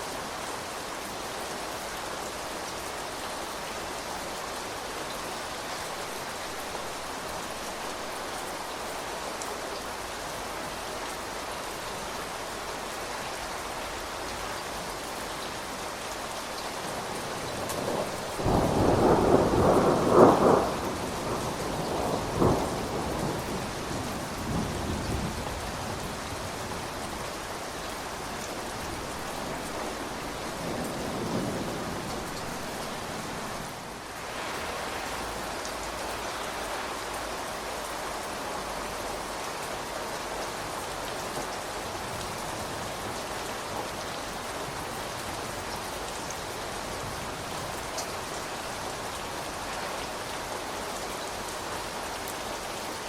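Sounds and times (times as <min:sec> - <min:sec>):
steady rain falling: 0:00.0 - 0:53.0
thunder rumbling: 0:17.4 - 0:26.6.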